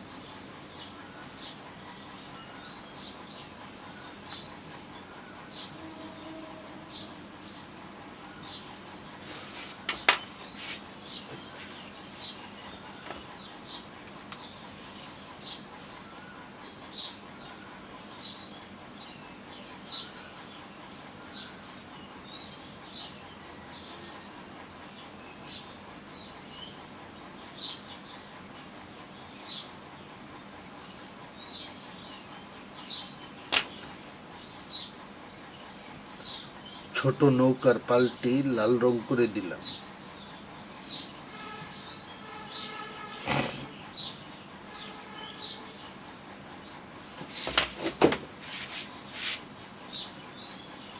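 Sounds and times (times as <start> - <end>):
bird chirping: 0.0 - 50.9.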